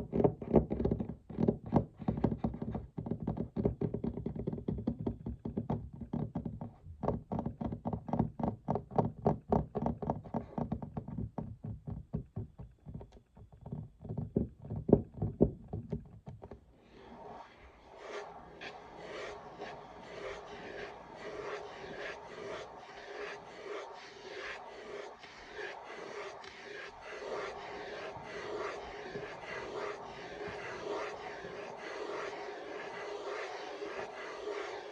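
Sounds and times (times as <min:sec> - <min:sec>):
fingers tapping on wooden desk: 0:00.0 - 0:16.6
scratching and rubbing on desk: 0:17.1 - 0:34.9.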